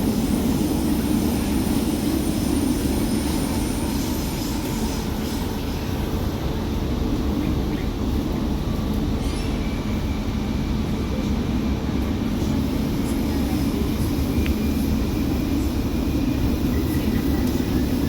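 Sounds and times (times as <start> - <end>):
metro train wheels rumbling on track: 0.0 - 18.0.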